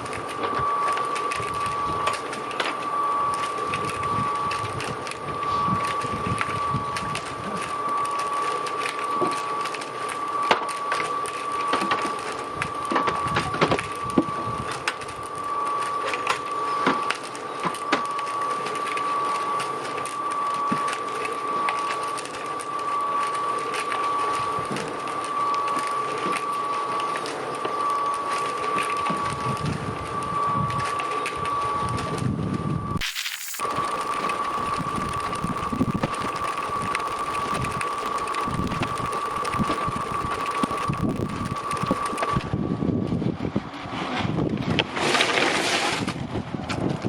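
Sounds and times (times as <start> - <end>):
small electric motor whining: 33.0 - 42.5.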